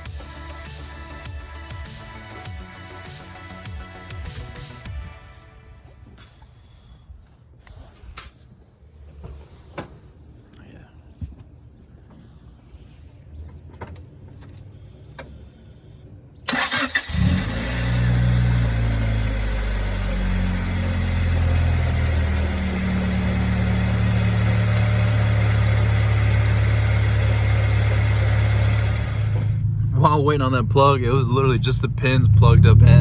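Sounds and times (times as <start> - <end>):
car engine starting and idling: 0.0 - 5.2, 13.6 - 33.0.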